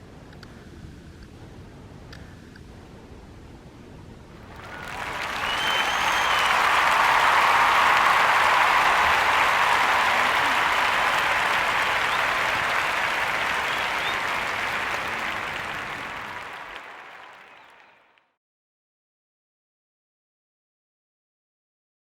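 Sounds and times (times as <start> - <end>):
dense applause: 4.4 - 18.2.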